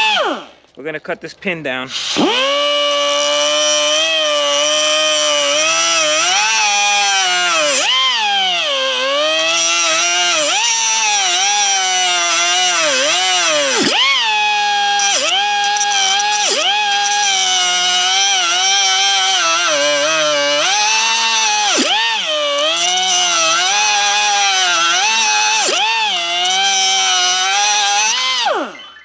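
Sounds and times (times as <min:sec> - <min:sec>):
power cutting tool whining: 0:00.0 - 0:00.6, 0:01.9 - 0:29.0.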